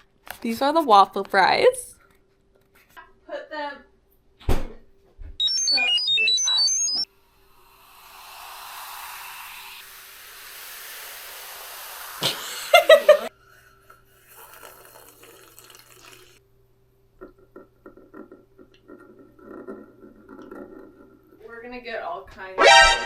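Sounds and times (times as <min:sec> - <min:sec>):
soda fizzing into cup: 0:07.8 - 0:13.1, 0:14.2 - 0:16.4.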